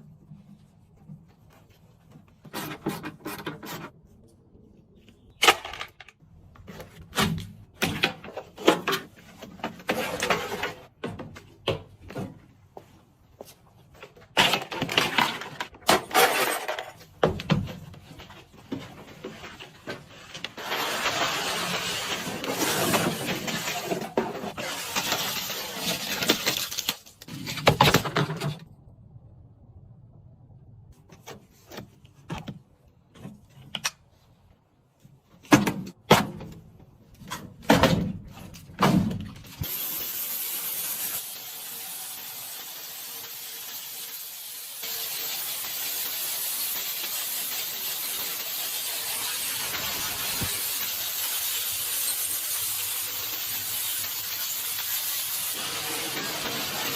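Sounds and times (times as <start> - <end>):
spraying hiss: 39.6 - 56.9.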